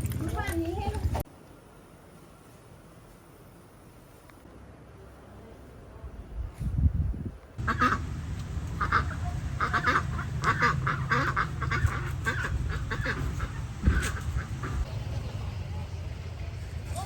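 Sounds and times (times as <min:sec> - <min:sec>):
ducks quacking: 0:07.6 - 0:15.5.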